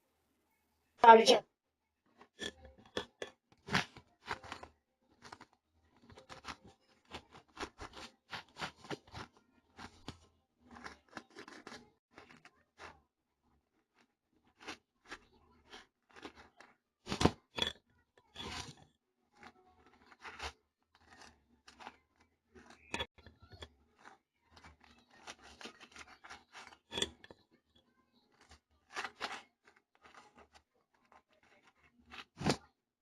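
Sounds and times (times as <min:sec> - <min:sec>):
knife scraping and tapping: 0:02.2 - 0:12.6, 0:13.9 - 0:27.5.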